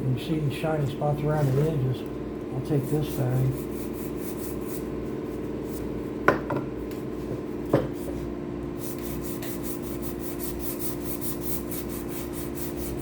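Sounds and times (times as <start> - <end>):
steady machine hum: 0.0 - 13.0
sandpaper scrubbing epoxy: 2.7 - 4.9, 8.8 - 13.0.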